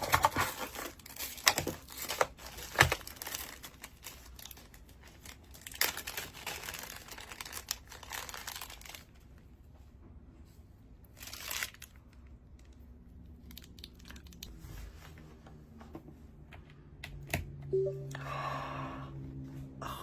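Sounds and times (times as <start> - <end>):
packaging rustling and crinkling: 0.0 - 9.4, 11.0 - 14.6.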